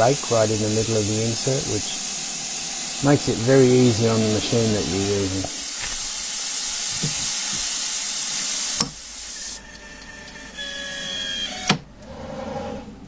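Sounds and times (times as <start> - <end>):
coolant mist spray hissing: 0.0 - 9.6
lathe whining: 0.0 - 12.2.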